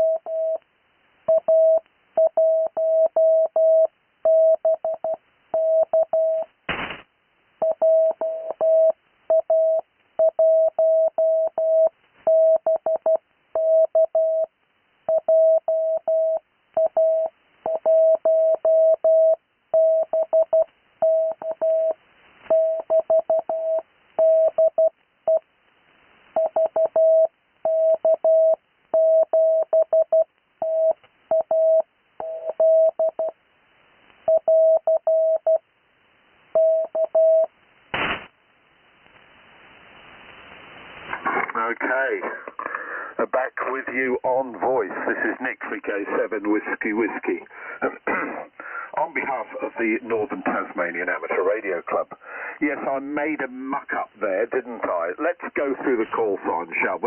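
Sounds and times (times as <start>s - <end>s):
sharp crackle: 6.5s - 7.2s, 37.6s - 41.3s.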